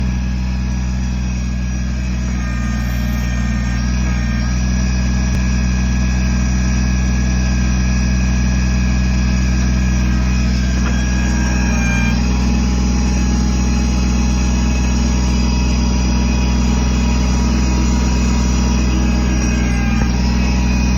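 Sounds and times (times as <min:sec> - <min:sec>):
diesel tractor engine running: 0:00.0 - 0:20.9.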